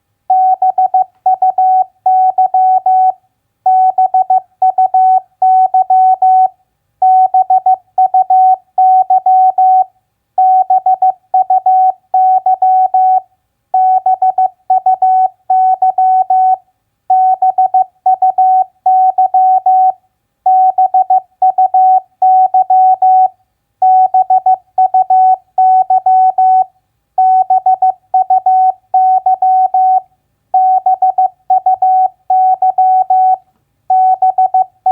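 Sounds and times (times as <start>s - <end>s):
morse code beeps: 0.3s - 3.1s, 27.2s - 30.0s, 30.6s - 34.9s.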